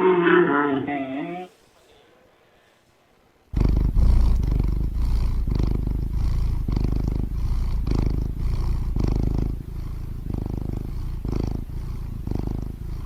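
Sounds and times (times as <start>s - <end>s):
cat purring: 3.5s - 13.0s.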